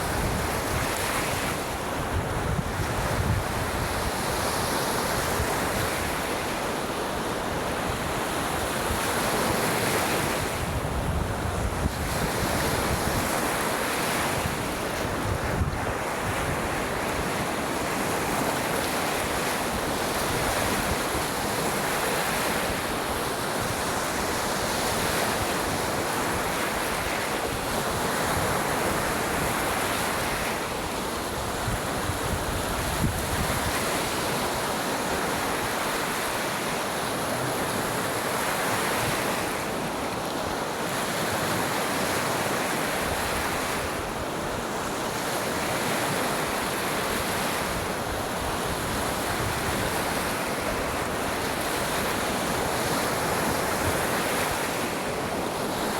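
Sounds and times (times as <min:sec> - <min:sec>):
waves washing onto beach: 0:00.0 - 0:55.9.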